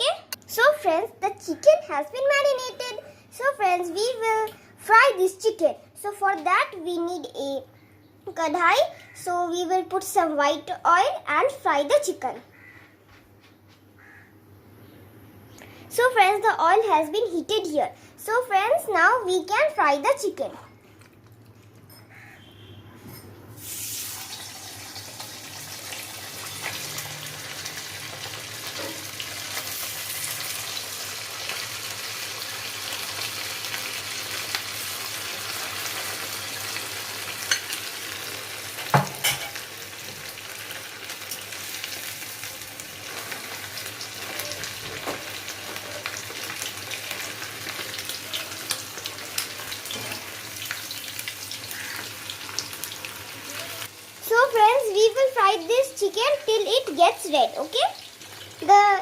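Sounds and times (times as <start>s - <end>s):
chicken sizzling in hot oil: 23.6s - 59.0s.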